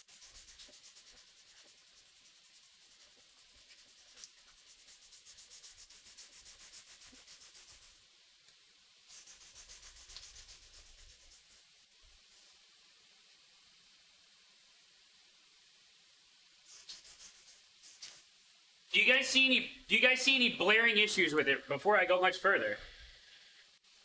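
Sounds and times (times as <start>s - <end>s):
hand sanding strokes: 0.0s - 8.0s, 9.1s - 11.9s, 16.7s - 18.4s.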